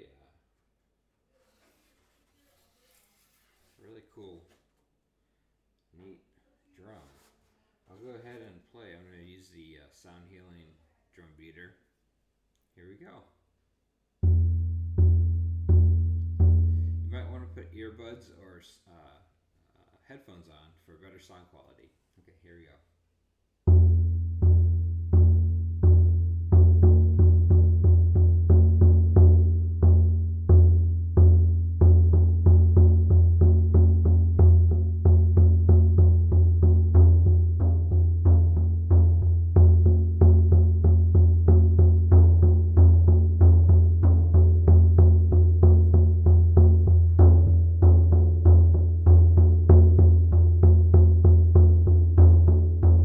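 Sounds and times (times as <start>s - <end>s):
frame drum beating: 14.2s - 17.5s, 23.7s - 53.0s.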